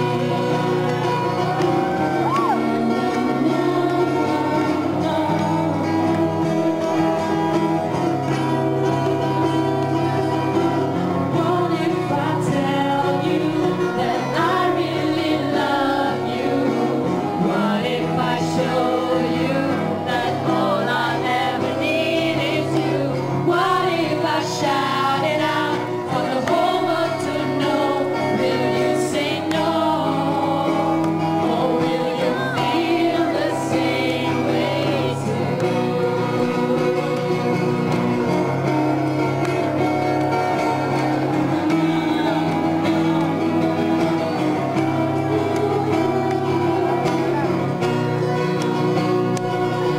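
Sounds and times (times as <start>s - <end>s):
person singing: 0.0s - 7.2s, 11.3s - 38.6s, 40.8s - 49.9s
acoustic guitar accompaniment: 0.0s - 49.9s.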